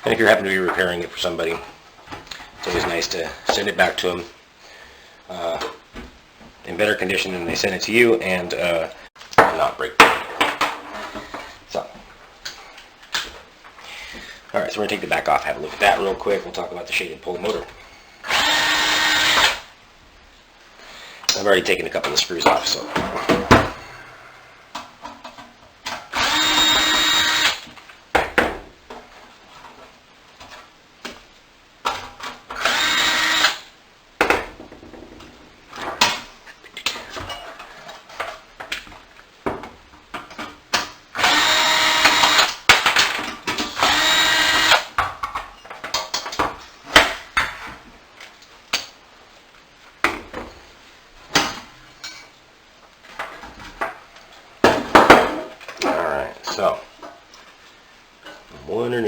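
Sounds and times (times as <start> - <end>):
cordless drill whirring: 18.2 - 19.6, 26.1 - 27.6, 32.6 - 33.7, 41.2 - 42.5, 43.8 - 44.9.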